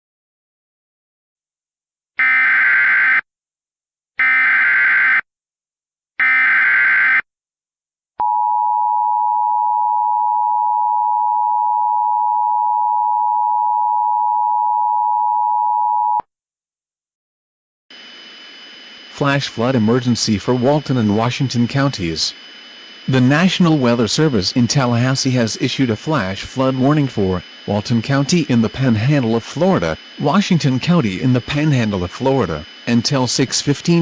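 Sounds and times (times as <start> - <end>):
harsh digital data warble: 17.9 - 34.0.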